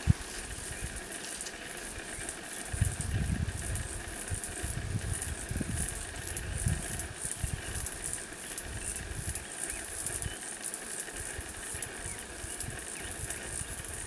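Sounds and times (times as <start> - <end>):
wind buffeting microphone: 0.0 - 1.1, 2.2 - 8.0.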